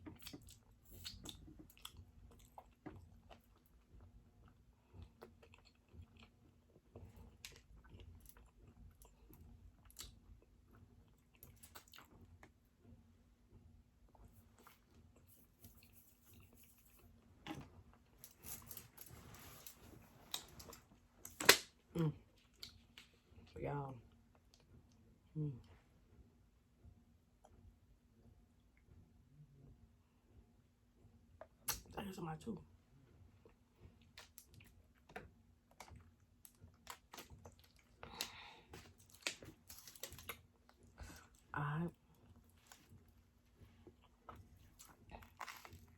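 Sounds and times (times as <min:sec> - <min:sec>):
person chewing with mouth clicks: 0:00.0 - 0:12.5
faint close-up chewing: 0:00.0 - 0:13.0, 0:14.1 - 0:23.5, 0:33.1 - 0:45.9.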